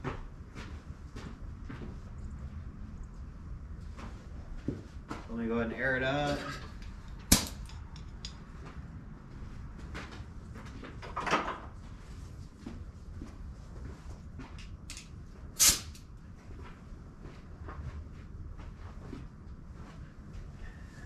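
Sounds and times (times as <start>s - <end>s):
sharp clack: 6.7s - 8.4s
hissing bursts of air: 15.6s - 16.0s.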